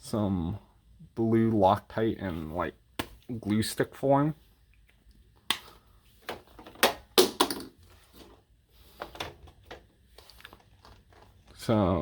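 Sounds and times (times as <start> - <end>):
plastic bottles and cans clattering: 6.2 - 11.7.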